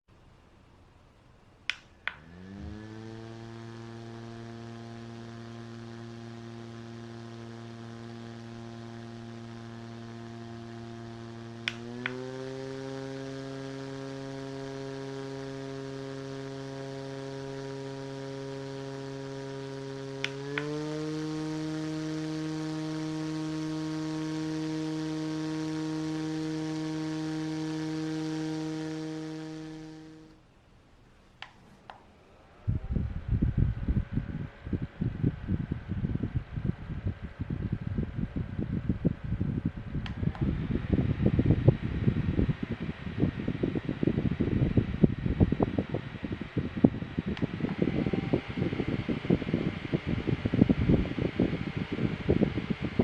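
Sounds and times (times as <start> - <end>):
fan motor hum: 0.4 - 53.0
fan button clicks: 11.6 - 12.3, 19.7 - 21.0.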